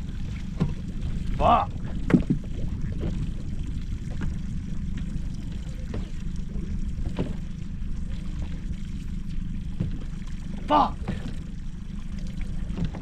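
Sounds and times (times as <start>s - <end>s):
boat motor idling: 0.0s - 13.0s
water lapping: 0.0s - 13.0s
knocks against hull: 2.0s - 2.4s, 12.7s - 13.0s.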